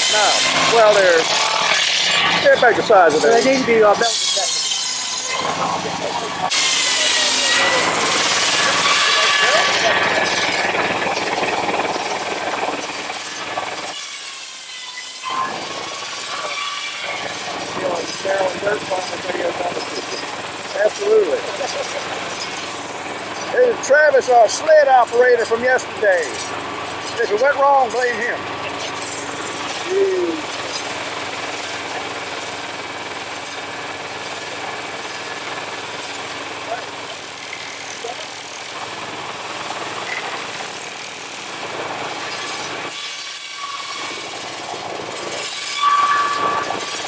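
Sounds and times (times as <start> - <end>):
tractor engine running: 17.6 - 29.7.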